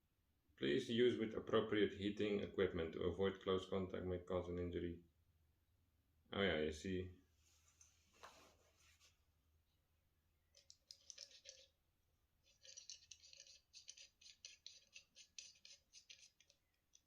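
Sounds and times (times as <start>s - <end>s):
small objects rattling and clicking: 10.6s - 11.7s, 12.5s - 17.0s.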